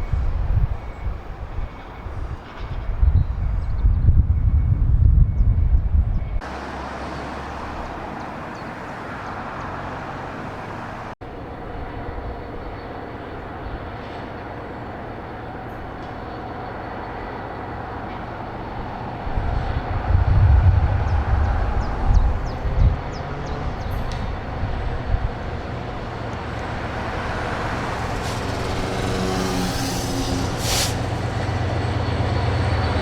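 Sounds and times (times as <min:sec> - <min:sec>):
train running past: 0:00.0 - 0:33.0
low rumbling: 0:19.4 - 0:33.0.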